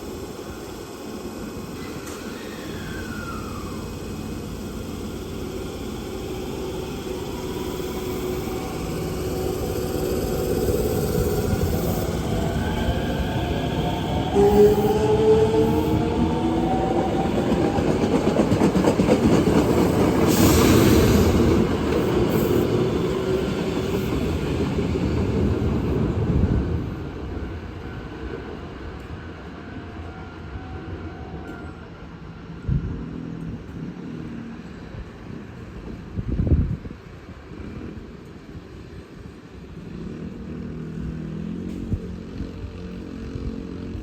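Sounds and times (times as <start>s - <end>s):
electric train rumbling: 0.0s - 44.0s.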